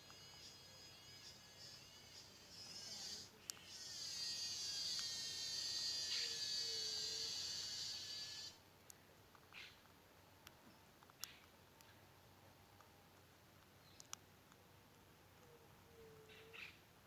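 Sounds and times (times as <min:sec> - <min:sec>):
high buzzing animal call: 0:00.0 - 0:08.6.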